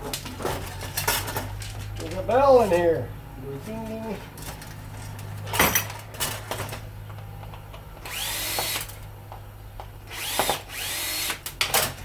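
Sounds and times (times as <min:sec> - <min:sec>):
cordless drill whining: 0:08.0 - 0:08.9, 0:10.1 - 0:11.4.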